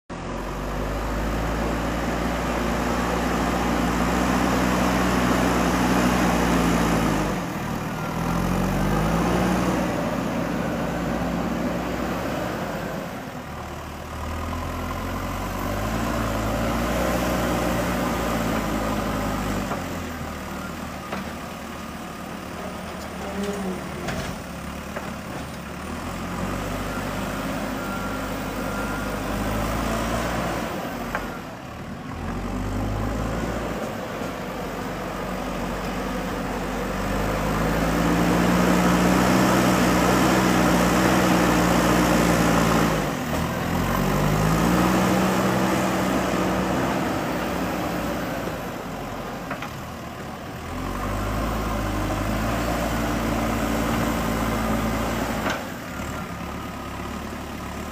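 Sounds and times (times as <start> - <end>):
backhoe diesel engine revving: 0.1 - 57.9.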